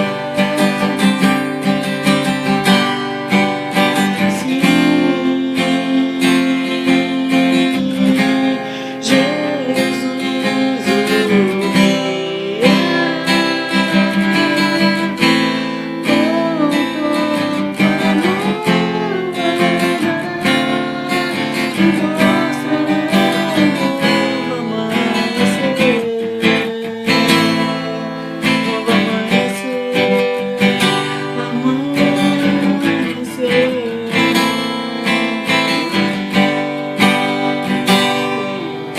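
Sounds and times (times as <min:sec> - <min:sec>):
sliding lead guitar melody: 0:00.0 - 0:38.9
strummed acoustic guitar: 0:00.0 - 0:38.9.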